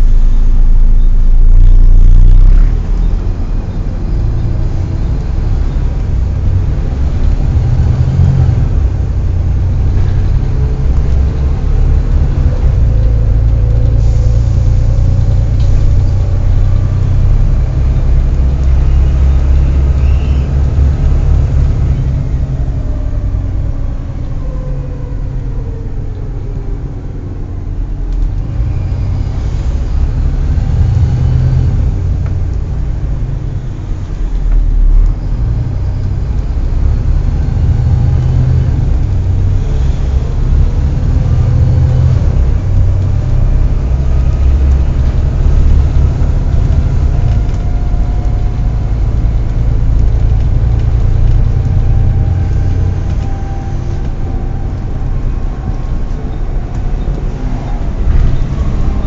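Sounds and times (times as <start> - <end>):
faint whine: 0.0 - 4.6
bus engine rumble: 0.0 - 59.0.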